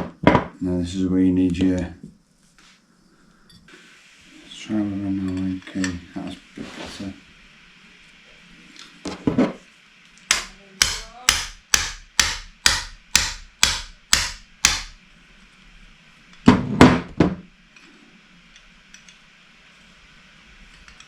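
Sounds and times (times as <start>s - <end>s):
hammer striking metal tool: 10.3s - 15.0s.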